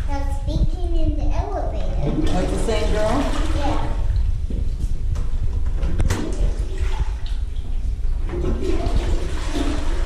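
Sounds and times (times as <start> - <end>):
toilet flushing: 2.1 - 4.2, 6.1 - 10.0.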